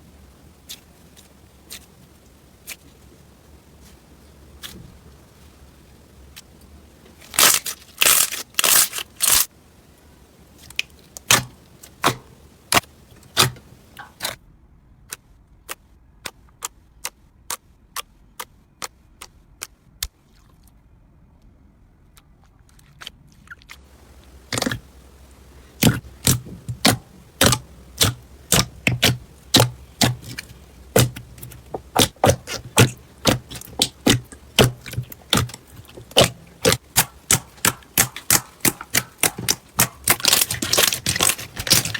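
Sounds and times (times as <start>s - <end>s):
slime clicking and popping: 24.0s - 24.9s, 25.7s - 41.9s.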